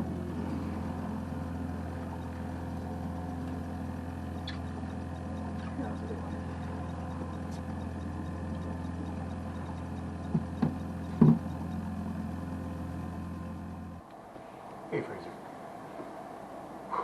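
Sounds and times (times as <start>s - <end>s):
engine running at low speed: 0.0s - 17.0s
short knocks: 10.3s - 11.6s.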